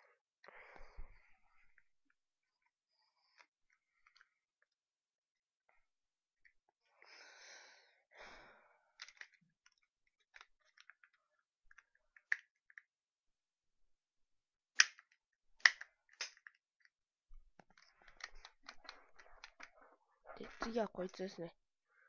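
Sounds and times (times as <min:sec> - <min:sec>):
pieces snapping into place: 0:14.8 - 0:16.6.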